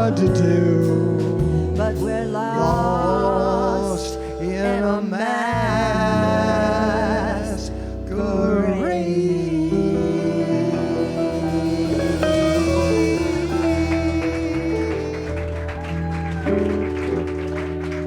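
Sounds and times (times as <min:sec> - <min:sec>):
man and woman singing a duet: 0:00.0 - 0:15.8
guitar accompaniment: 0:08.7 - 0:18.0.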